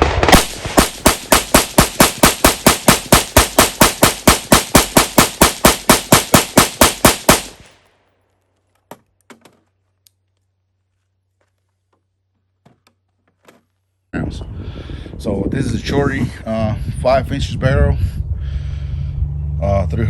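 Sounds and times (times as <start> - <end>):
rapid rifle shots: 0.0 - 7.8.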